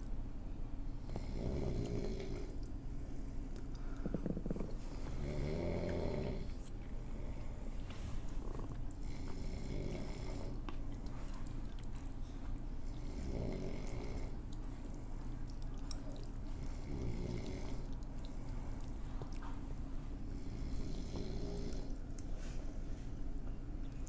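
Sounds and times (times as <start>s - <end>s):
loud snoring: 1.0s - 2.5s, 4.0s - 6.6s, 8.4s - 10.6s, 13.0s - 14.3s, 16.7s - 17.9s, 20.4s - 21.9s.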